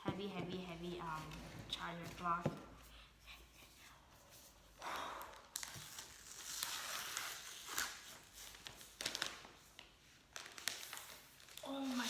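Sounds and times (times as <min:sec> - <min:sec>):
paper and wrap crinkling: 0:05.2 - 0:12.0.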